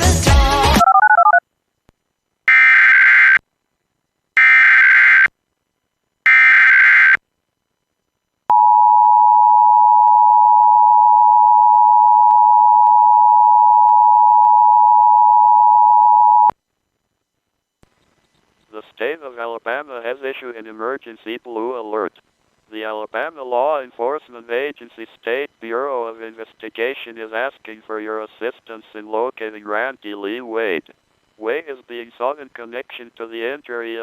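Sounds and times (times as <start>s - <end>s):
music: 0.0s - 0.8s.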